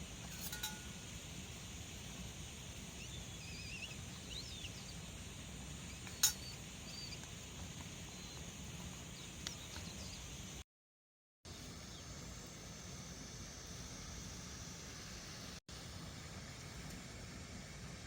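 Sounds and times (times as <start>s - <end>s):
outdoor background noise: 0.0s - 10.6s, 11.5s - 18.0s
faint bird chirps: 2.9s - 5.1s, 5.8s - 7.3s, 8.0s - 8.5s, 9.1s - 10.4s.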